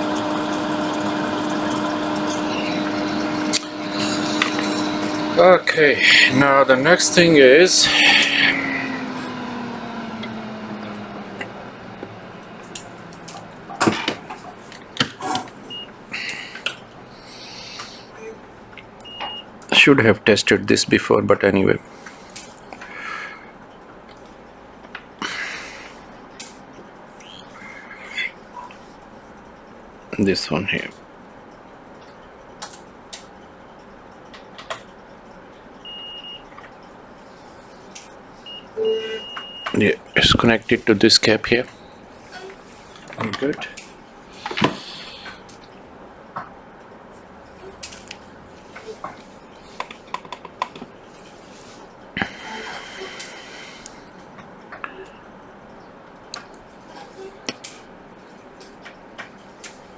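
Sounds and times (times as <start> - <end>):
low hum sliding down: 0.0 - 16.2
high electronic beep: 38.5 - 40.4.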